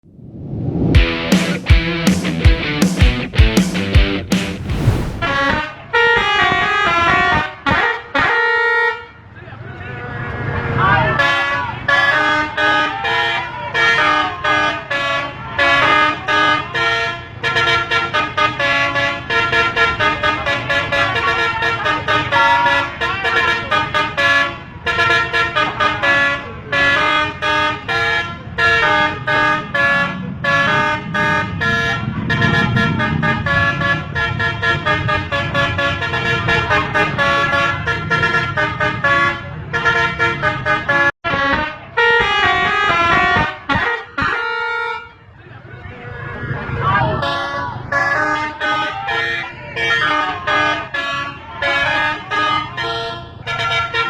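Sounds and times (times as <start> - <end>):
low rumble: 2.6 - 5.5
bus air horns playing melodic toots: 5.2 - 9.3, 11.0 - 45.2, 47.1 - 54.0.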